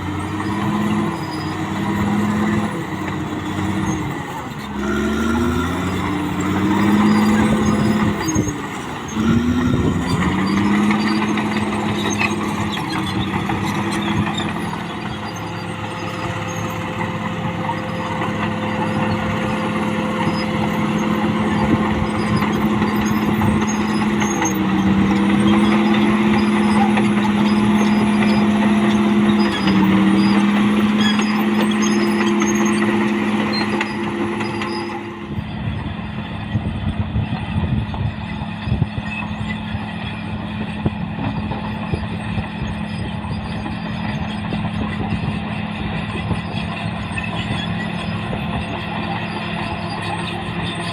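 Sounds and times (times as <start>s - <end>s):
bulldozer clatter: 0.0s - 50.9s
bulldozer diesel engine running: 0.0s - 50.9s.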